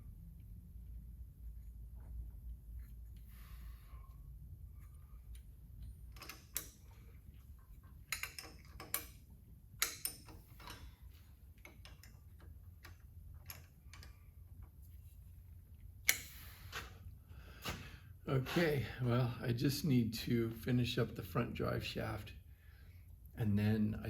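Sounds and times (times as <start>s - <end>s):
metallic clicks of hand tools: 6.1s - 7.0s, 8.1s - 9.2s, 9.8s - 10.9s.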